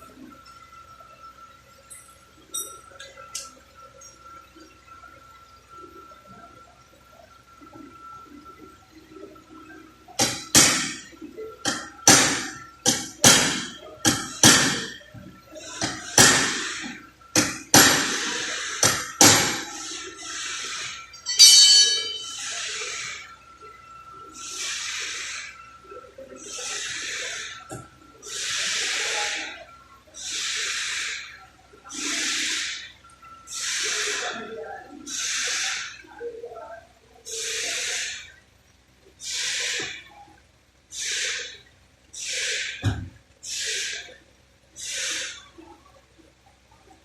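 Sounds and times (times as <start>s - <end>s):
hammer on sheet metal: 10.2s - 11.0s, 11.7s - 14.9s
hissing bursts: 40.9s - 41.5s.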